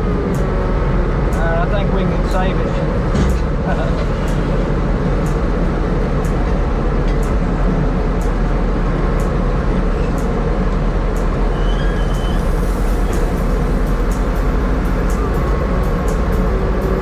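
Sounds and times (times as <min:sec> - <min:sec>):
machinery running steadily: 0:00.0 - 0:17.0.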